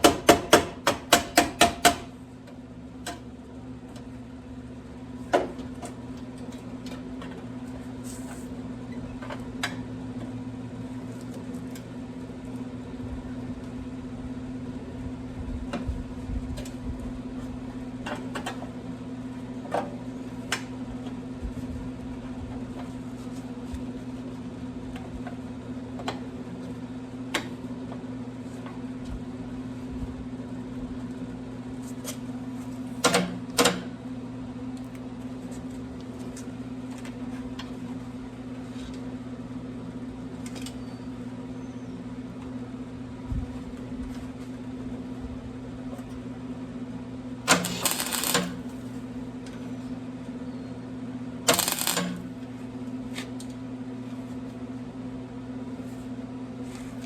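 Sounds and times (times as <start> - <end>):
electrical hum: 0.0 - 57.0
welder tack welding: 47.5 - 48.9, 51.5 - 52.4.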